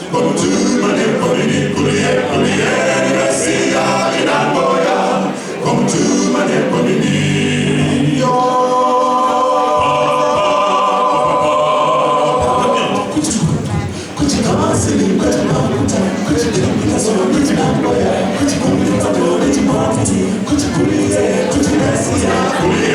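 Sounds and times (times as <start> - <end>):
men singing a cappella gospel: 0.0 - 22.9.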